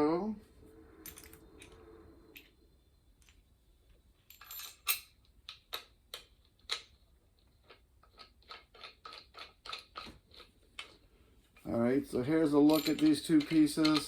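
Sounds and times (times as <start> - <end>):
metal parts clicking and clinking: 1.0 - 2.5, 4.2 - 11.0, 12.4 - 14.0.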